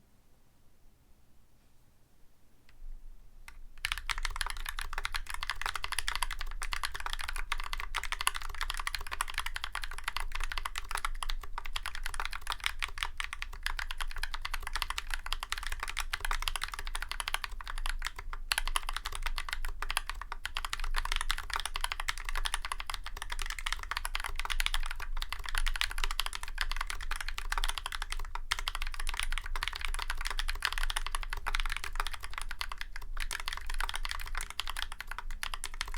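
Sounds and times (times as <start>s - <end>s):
typing on mechanical keyboard: 3.5s - 35.9s.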